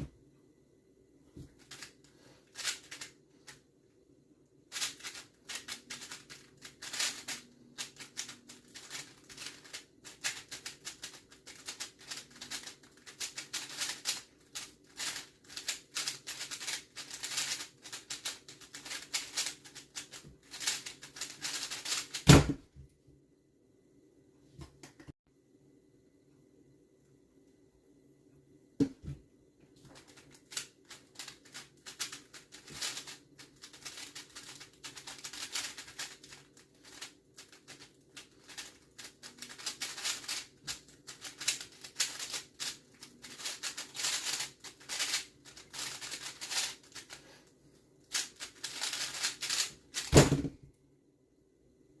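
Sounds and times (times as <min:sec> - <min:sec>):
speedcube plastic clicks: 0:04.7 - 0:22.2, 0:30.0 - 0:47.2
loud thud: 0:50.1 - 0:50.6.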